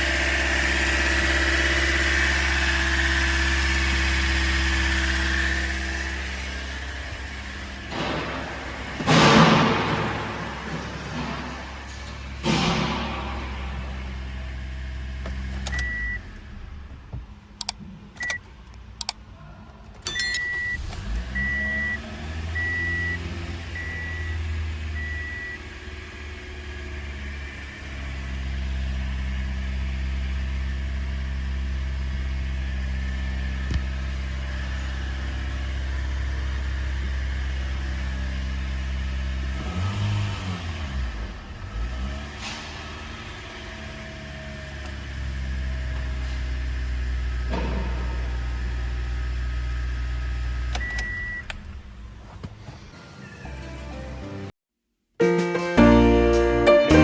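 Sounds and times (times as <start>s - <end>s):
engine revving: 0.0s - 17.0s, 20.6s - 29.7s, 34.4s - 46.1s
car engine starting and idling: 0.0s - 54.5s
dashboard chime beeping: 20.1s - 20.8s.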